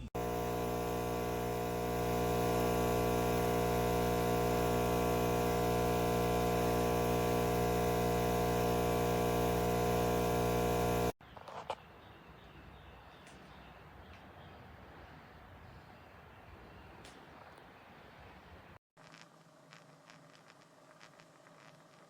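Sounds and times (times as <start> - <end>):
espresso machine pump buzzing: 0.0 - 11.2.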